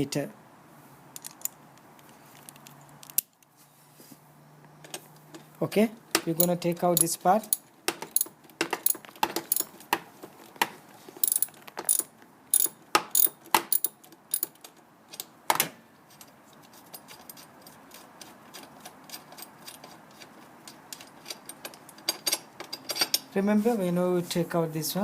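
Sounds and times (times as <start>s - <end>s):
ratchet wrench clicking: 6.4s - 9.7s, 11.2s - 14.5s.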